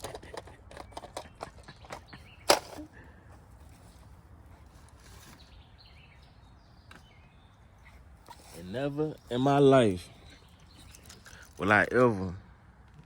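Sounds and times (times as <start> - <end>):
things being rummaged through: 0.0 - 5.5.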